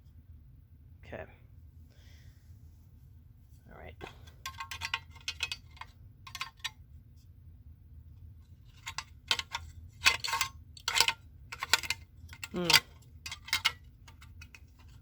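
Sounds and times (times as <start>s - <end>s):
plastic cover clicks and clinks: 8.8s - 15.0s.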